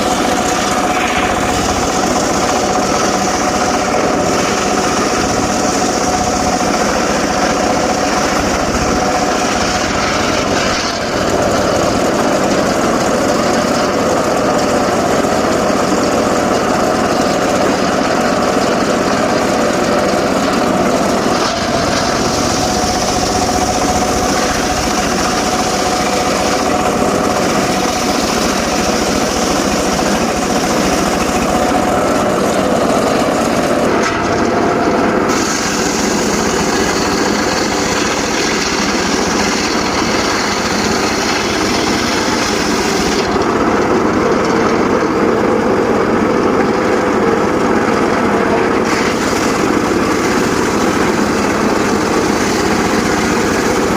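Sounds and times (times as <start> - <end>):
engine-driven circular saw whining: 0.0 - 53.9.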